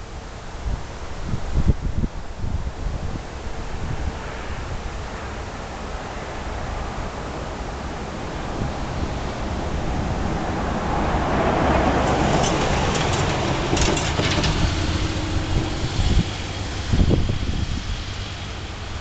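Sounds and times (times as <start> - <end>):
vehicle passing by: 7.5 - 19.0.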